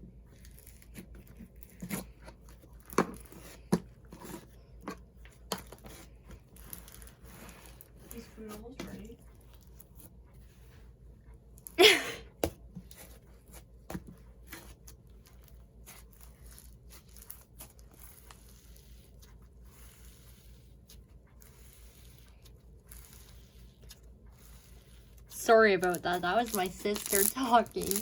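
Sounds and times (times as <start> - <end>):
slime crackling and popping: 21.5 - 28.0.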